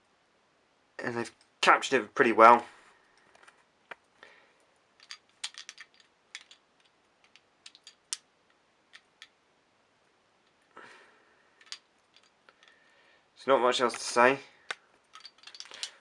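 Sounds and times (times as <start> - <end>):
toy trains clicking and tapping: 5.0 - 8.2, 11.6 - 12.8, 14.7 - 16.0.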